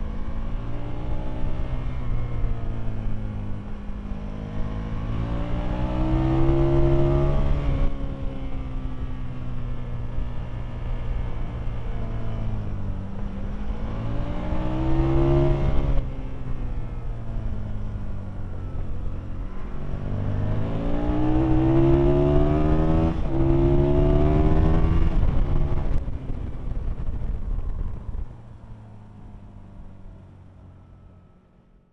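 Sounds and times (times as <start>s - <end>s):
motorcycle engine revving: 4.2s - 8.5s, 18.6s - 27.4s.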